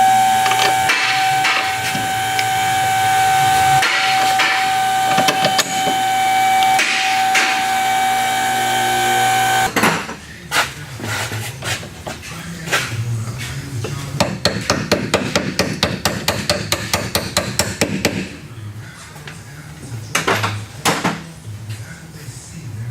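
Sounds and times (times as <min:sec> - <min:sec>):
high mechanical whine: 0:00.0 - 0:09.8.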